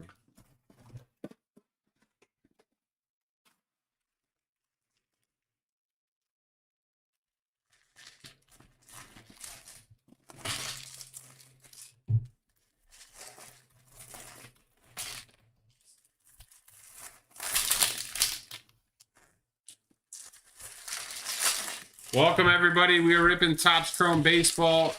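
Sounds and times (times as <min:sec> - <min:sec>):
wrapping being torn and crinkled: 0:07.6 - 0:12.0, 0:12.6 - 0:24.9.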